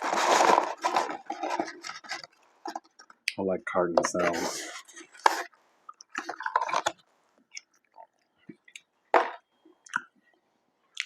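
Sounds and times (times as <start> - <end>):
cardboard carton crackling: 0.0 - 3.1.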